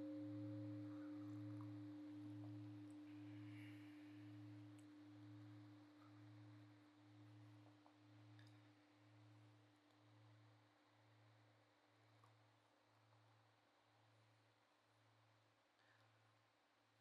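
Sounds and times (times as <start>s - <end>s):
meditation bell ringing: 0.0s - 6.5s.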